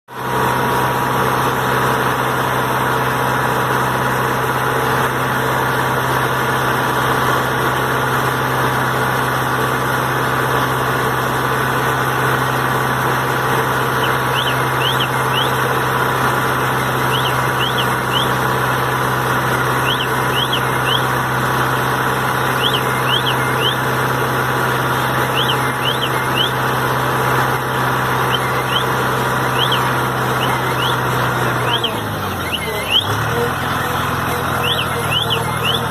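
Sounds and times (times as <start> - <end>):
mixer humming: 0.1 - 35.9
short high chirps: 13.9 - 15.9, 16.5 - 18.6, 19.7 - 21.2, 22.2 - 27.0, 28.1 - 33.2.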